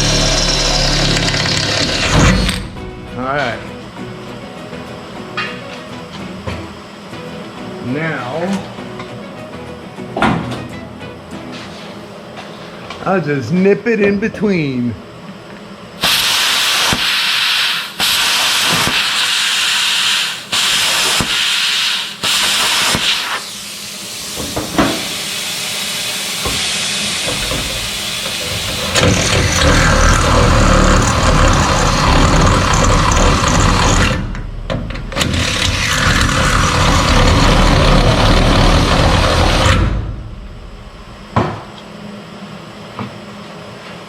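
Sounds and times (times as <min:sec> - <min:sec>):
loud steady noise with hum: 0:00.0 - 0:44.0
welding hissing and crackling: 0:16.0 - 0:34.0.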